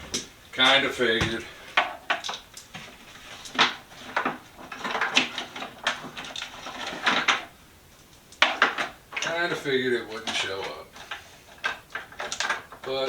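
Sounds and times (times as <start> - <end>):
small hard objects clicking and rattling: 3.3 - 7.5.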